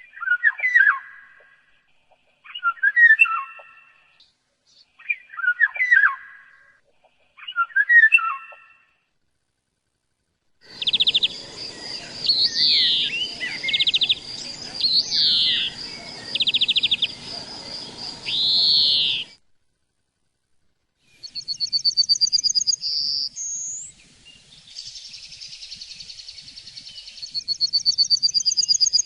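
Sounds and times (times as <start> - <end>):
bird buzzy trills and whistles: 10.7 - 19.4, 21.2 - 29.0
birds whistling phrases: 10.7 - 19.4, 21.2 - 29.0
thin high steady tone: 10.7 - 19.4.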